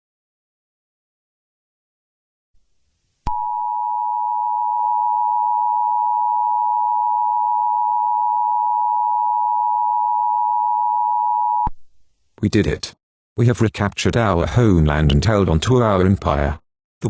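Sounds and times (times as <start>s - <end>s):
two-tone alarm tone: 3.3s - 11.7s.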